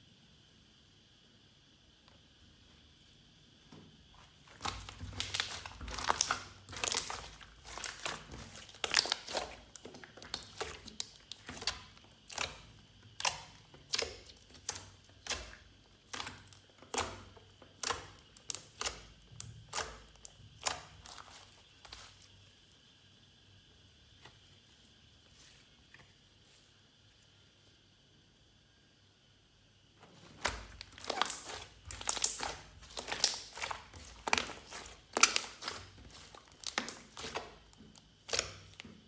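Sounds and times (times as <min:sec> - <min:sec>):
slime squelching by hand: 0:04.1 - 0:22.8, 0:30.0 - 0:39.0.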